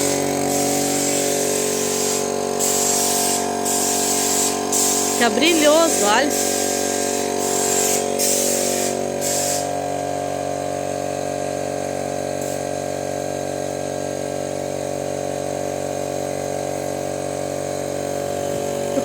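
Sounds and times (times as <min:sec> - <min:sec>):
spray hissing: 0:00.0 - 0:09.9
sprayer motor whine: 0:00.0 - 0:19.0.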